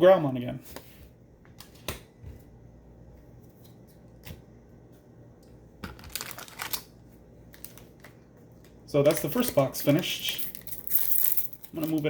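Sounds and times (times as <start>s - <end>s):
trading cards clicking and rustling: 7.6s - 12.0s.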